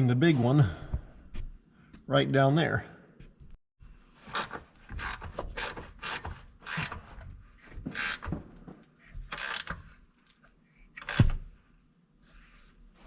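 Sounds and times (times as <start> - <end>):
ratchet wrench clicking: 9.3 - 9.8, 11.0 - 11.4.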